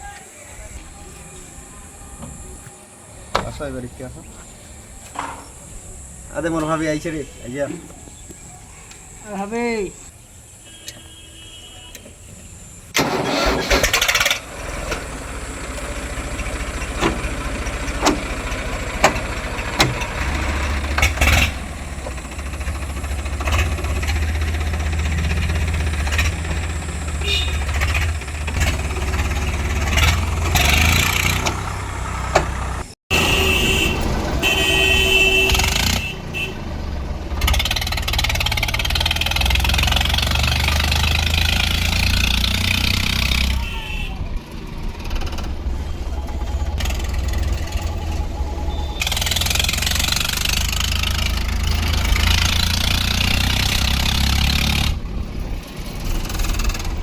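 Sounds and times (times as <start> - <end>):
diesel engine running: 0.0 - 9.1, 12.4 - 57.0
knocks and clatter: 16.6 - 26.8.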